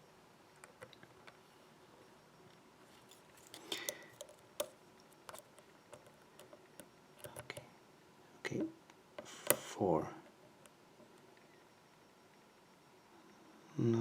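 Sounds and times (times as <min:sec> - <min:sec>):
lock pick clicking and scraping: 0:02.9 - 0:07.7, 0:09.2 - 0:09.7.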